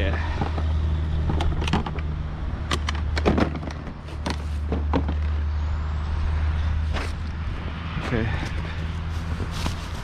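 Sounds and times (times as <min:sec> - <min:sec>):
junk knocking and clattering: 0:00.0 - 0:05.4.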